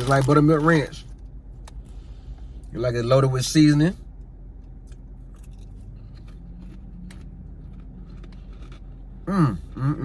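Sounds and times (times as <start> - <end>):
rice crisps crunching: 0.0 - 1.0
low steady hum: 0.0 - 10.0.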